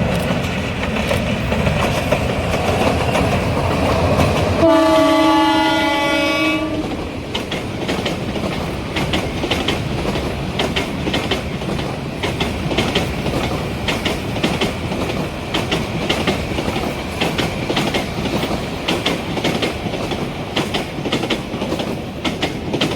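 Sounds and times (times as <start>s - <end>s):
passenger train rumbling past: 0.0s - 22.9s
locomotive horn chord: 4.6s - 6.9s.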